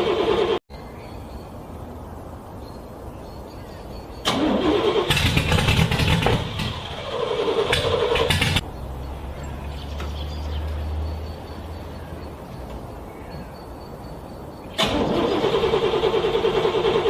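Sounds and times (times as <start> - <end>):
car engine cranking: 0.0 - 0.6, 4.2 - 8.6, 14.8 - 17.0.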